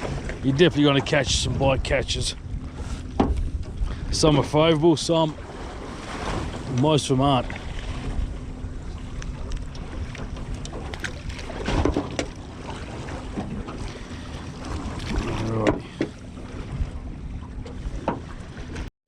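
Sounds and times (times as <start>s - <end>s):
wind buffeting microphone: 0.0s - 12.3s
water lapping at hull: 0.0s - 18.9s.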